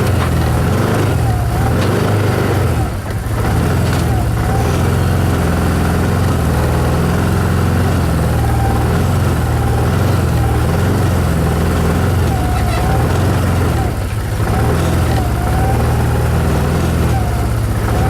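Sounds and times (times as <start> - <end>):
vehicle engine idling: 0.0 - 18.0
faint short squeaks: 12.3 - 13.7.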